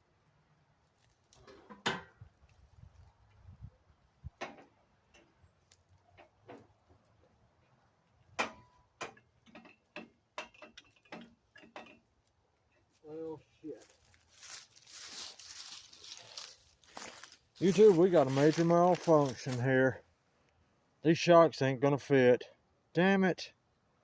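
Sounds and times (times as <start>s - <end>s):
metallic clicks and knocks: 8.3s - 12.1s.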